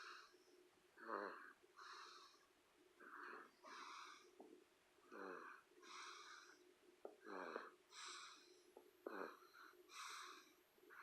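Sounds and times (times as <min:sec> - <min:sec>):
quiet wheezy snoring: 0:00.0 - 0:11.0.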